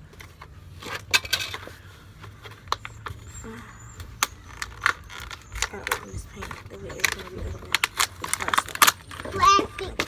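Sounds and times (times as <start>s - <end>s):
small containers clicking and knocking: 0.0s - 10.0s.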